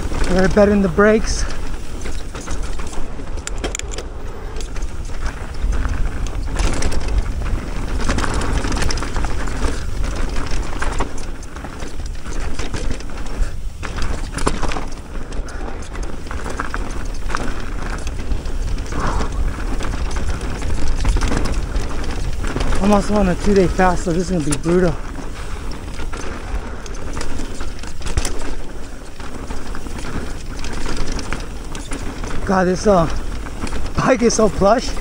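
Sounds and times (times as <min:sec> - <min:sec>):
bike rattling over bumps: 0:00.0 - 0:35.0
bike tyres rolling on dirt: 0:00.0 - 0:35.0
wind rushing over microphone: 0:00.0 - 0:35.0.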